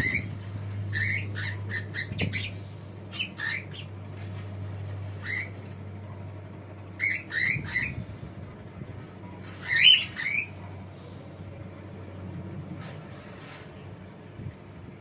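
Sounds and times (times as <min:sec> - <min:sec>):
steady low hum: 0:00.0 - 0:15.0
cockatiel chirping: 0:03.1 - 0:03.9.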